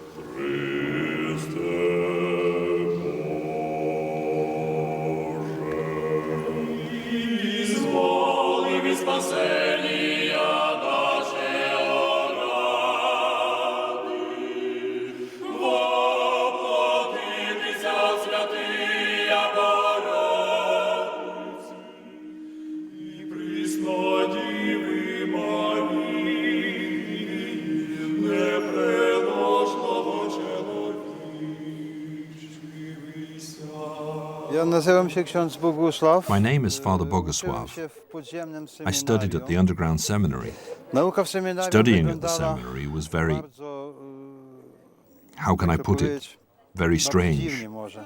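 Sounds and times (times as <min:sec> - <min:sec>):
choir singing slow chant: 0:00.0 - 0:37.6.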